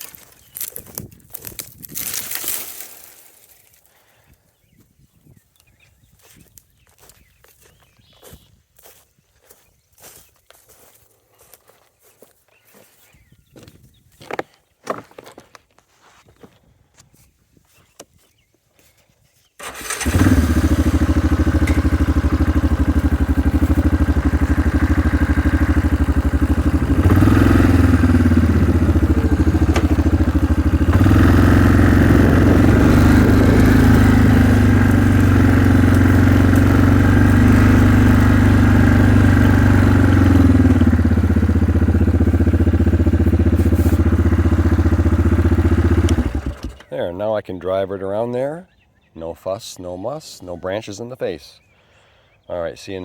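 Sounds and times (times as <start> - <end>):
quad bike engine running: 19.6 - 46.9.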